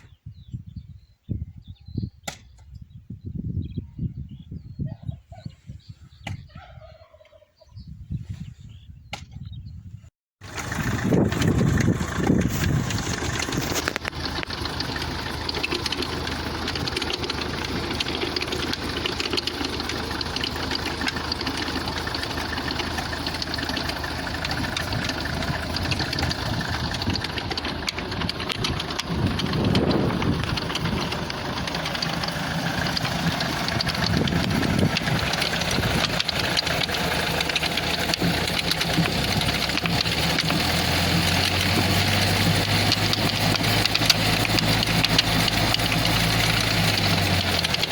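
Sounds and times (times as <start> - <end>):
tiller engine running: 10.4 - 47.9
sharp clicks: 11.3 - 47.9.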